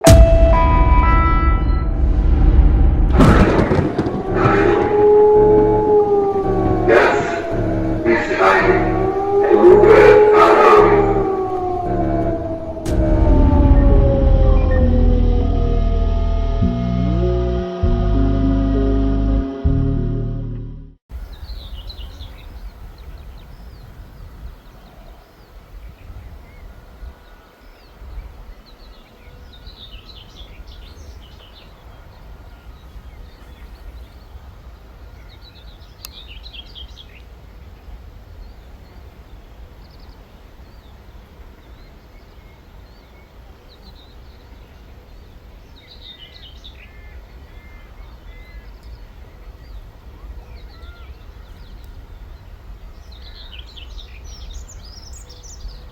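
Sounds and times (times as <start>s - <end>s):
steady low rumble: 0.0s - 20.9s
songbirds chirping: 3.6s - 12.9s, 21.1s - 55.9s.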